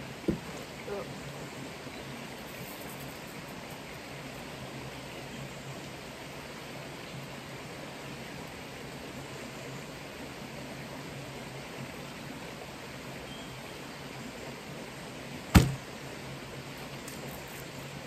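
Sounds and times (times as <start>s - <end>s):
sharp knock: 15.6s - 15.8s.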